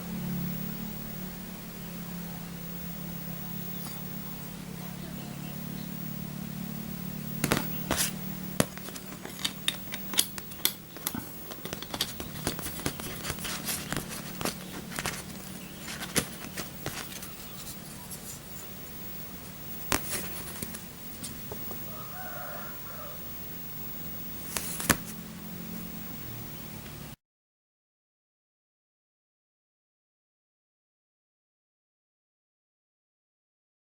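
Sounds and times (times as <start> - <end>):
steady low hum: 0.0 - 27.2
packaging clicks and taps: 7.4 - 18.5, 19.8 - 21.8, 24.5 - 25.2.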